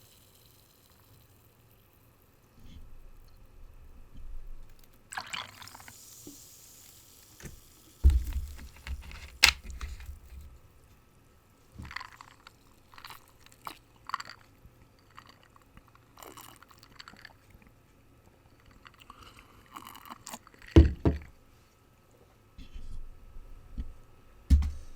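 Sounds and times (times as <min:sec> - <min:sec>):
soda fizzing: 0:00.0 - 0:02.5, 0:04.8 - 0:10.4
ice clinking: 0:05.1 - 0:10.4.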